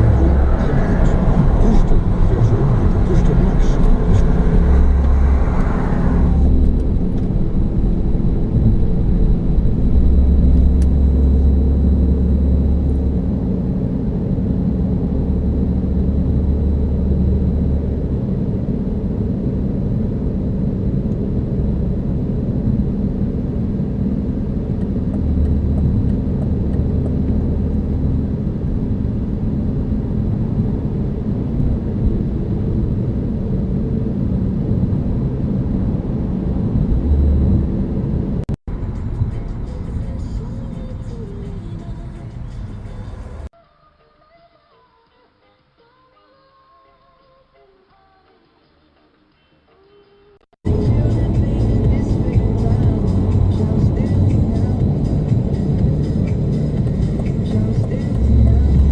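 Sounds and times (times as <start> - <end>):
car engine idling: 0.0 - 12.7, 50.7 - 58.9.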